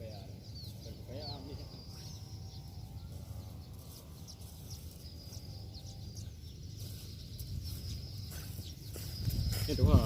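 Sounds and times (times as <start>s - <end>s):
steady low rumble: 0.0s - 10.0s
short high bird chirps: 0.4s - 10.0s.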